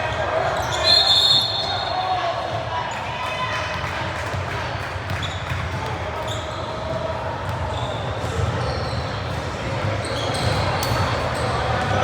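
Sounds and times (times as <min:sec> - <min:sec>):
sneaker squeaks: 0:00.1 - 0:02.1, 0:05.1 - 0:12.0.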